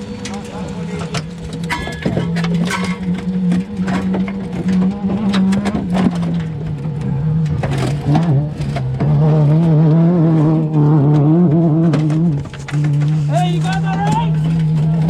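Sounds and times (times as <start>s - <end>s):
knocks and rattles: 0.0s - 9.8s, 10.4s - 15.0s
truck engine running: 0.0s - 15.0s.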